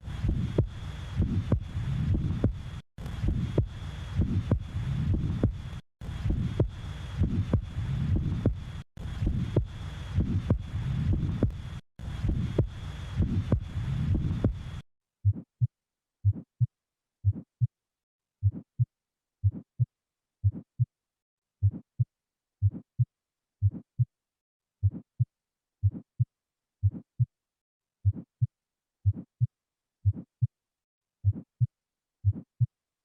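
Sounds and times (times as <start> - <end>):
heartbeat lub-dub: 0.0 - 15.5.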